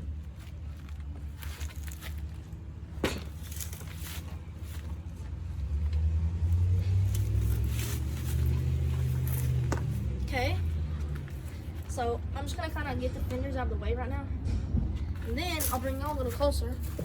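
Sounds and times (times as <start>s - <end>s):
low steady engine hum: 0.0s - 17.0s
hands scraping on bike: 0.3s - 2.5s, 6.9s - 10.4s.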